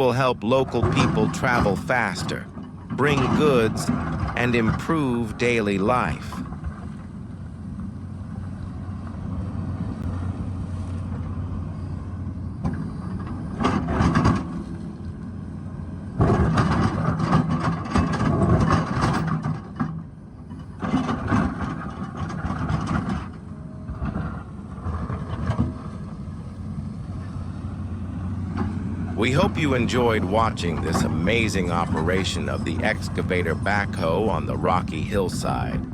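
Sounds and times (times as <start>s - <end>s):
excavator diesel engine running: 0.0s - 6.4s, 27.2s - 35.9s.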